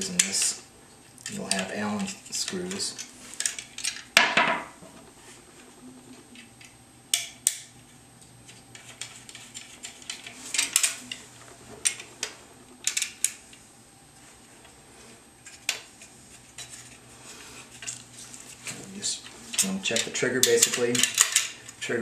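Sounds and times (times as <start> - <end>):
shotgun metal parts clicking: 1.2 - 4.1, 12.8 - 13.4, 19.5 - 21.8.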